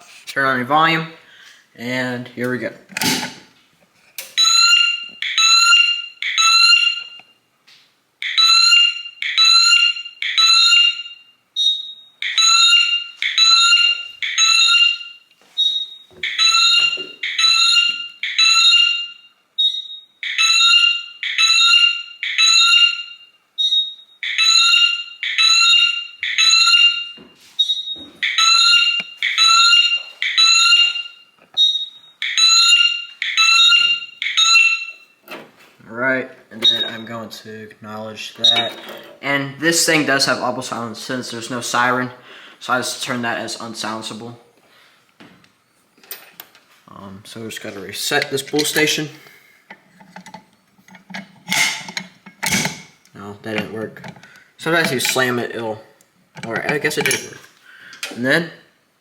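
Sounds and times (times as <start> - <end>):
fire alarm high beeps: 4.4 - 7.4, 8.2 - 35.2, 36.6 - 37.1.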